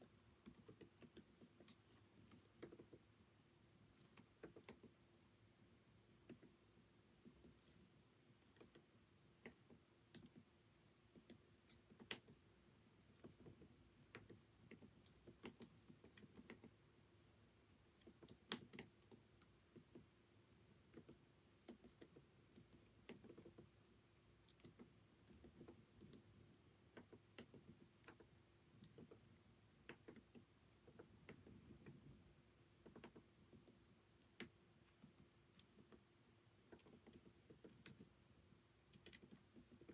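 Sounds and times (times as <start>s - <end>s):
faint steady hum: 0.0s - 39.9s
typing on computer keyboard: 0.4s - 3.0s, 4.0s - 4.9s, 8.5s - 10.4s, 11.1s - 12.4s, 13.2s - 16.8s, 18.0s - 20.0s, 20.9s - 23.7s, 24.5s - 26.3s, 26.9s - 32.0s, 32.8s - 36.0s, 36.7s - 38.1s, 38.9s - 39.9s.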